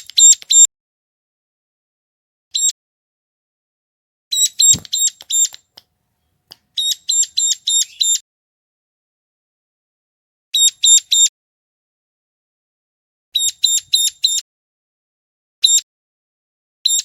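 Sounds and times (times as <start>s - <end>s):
small bird chirping: 0.0s - 0.7s, 2.5s - 2.7s, 4.3s - 5.8s, 6.7s - 8.2s, 10.6s - 11.3s, 13.4s - 14.4s.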